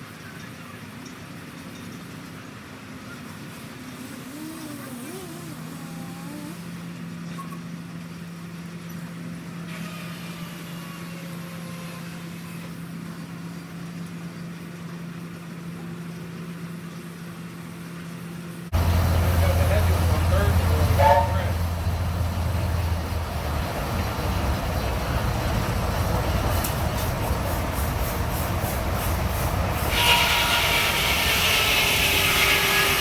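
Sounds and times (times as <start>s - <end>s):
engine humming: 3.4s - 7.0s, 18.7s - 33.0s.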